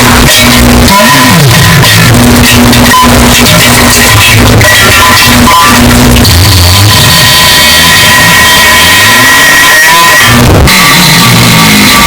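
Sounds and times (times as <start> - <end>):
wavering low rumble: 0.0 - 7.1
distorted high buzz: 0.0 - 12.0.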